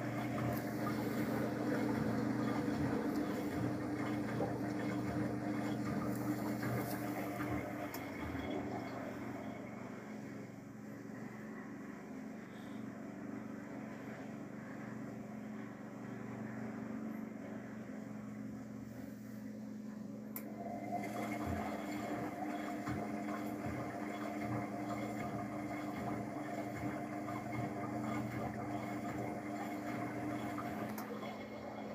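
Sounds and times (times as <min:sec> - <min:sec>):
washing machine motor hum: 0:00.0 - 0:31.9
click: 0:20.3 - 0:20.5.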